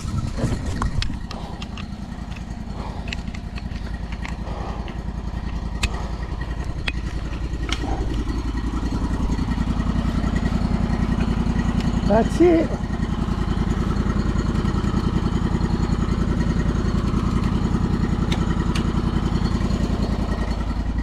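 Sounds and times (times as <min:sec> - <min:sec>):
sawmill engine idling: 0:00.0 - 0:21.0
sharp clicks and knocks: 0:00.4 - 0:12.1, 0:16.9 - 0:20.7.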